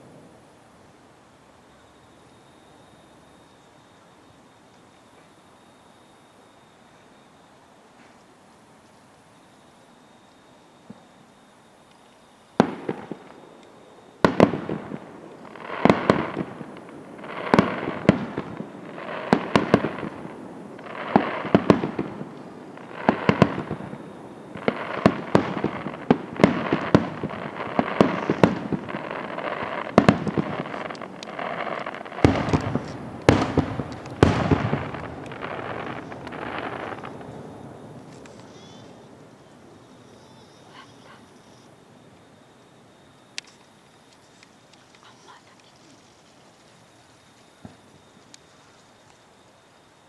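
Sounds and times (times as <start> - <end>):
fireworks shells bursting: 12.6 - 39.0.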